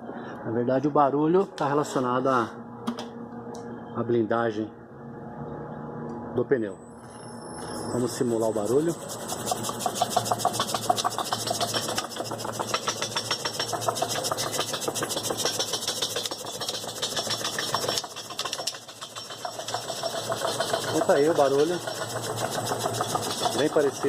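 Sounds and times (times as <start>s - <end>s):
rapid knocking rattle from tyre: 9.2s - 24.0s.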